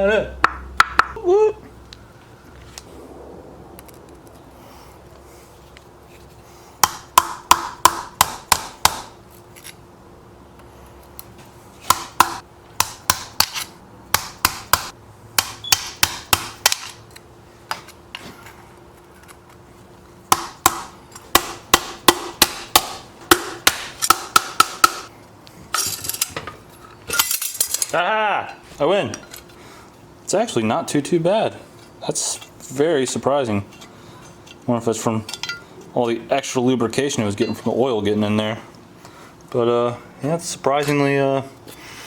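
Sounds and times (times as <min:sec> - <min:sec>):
hammer striking metal: 0:06.8 - 0:09.1, 0:11.9 - 0:17.0, 0:20.3 - 0:25.1.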